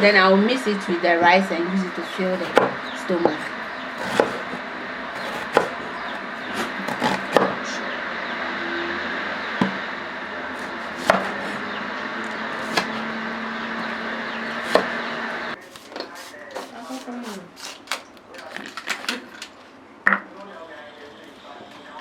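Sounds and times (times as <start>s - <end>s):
knife chopping vegetables: 2.4s - 3.4s, 4.0s - 4.6s, 5.2s - 7.6s, 10.6s - 11.6s, 12.6s - 13.0s, 14.5s - 15.0s.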